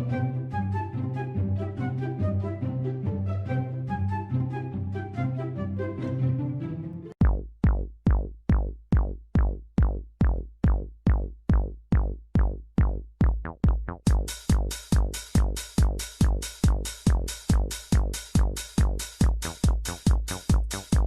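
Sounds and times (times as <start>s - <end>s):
electronic dance beat: 13.6s - 21.0s
hi-hats: 14.1s - 21.0s.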